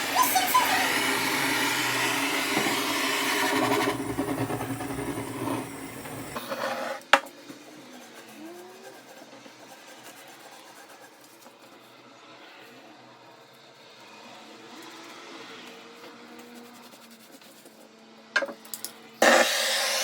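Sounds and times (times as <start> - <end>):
small electric motor whirring: 0.0 - 11.0.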